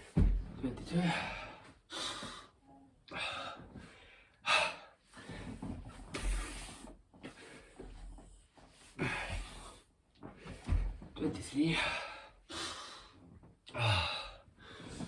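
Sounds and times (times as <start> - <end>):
dull low thump: 0.0 - 0.6
man gasping breaths: 1.0 - 5.6, 8.9 - 9.8, 11.7 - 15.0.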